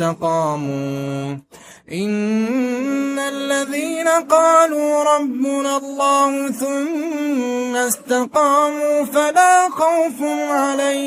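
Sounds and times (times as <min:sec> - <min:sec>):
man reciting melodically: 0:00.0 - 0:11.0
man's breath: 0:01.5 - 0:01.9.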